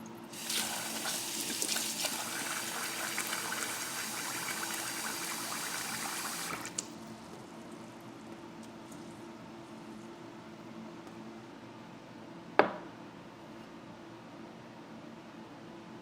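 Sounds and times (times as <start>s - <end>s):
tap water running into vessel: 0.3s - 7.0s.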